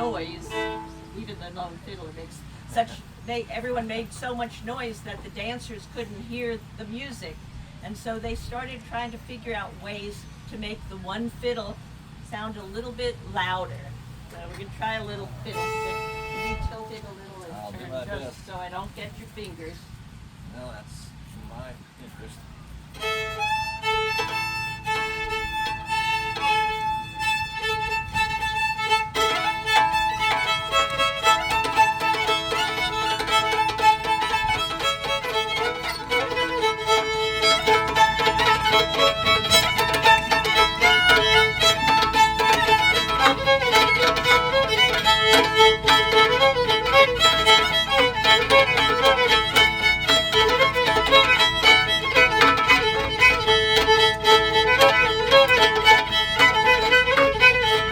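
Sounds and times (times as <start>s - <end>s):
sticks beating on fiddle strings: 0.0s - 1.2s, 23.0s - 57.9s
fiddle tune: 0.0s - 19.7s, 22.7s - 57.9s.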